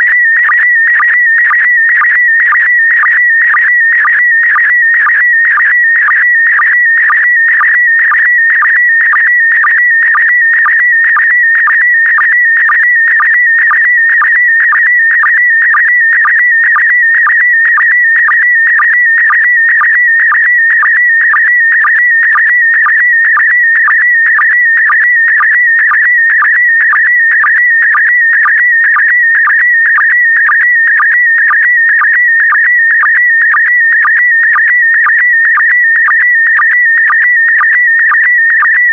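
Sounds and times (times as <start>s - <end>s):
warbling data tone: 0.0s - 17.9s.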